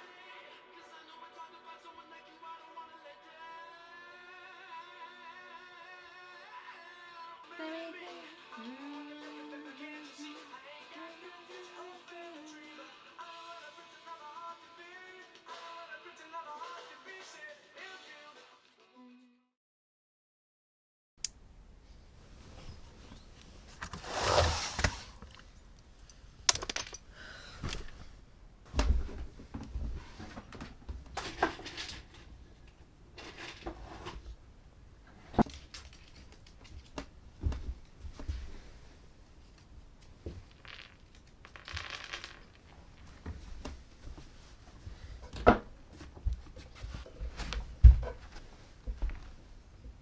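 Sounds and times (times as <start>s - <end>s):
rustling: 21.6s - 50.0s.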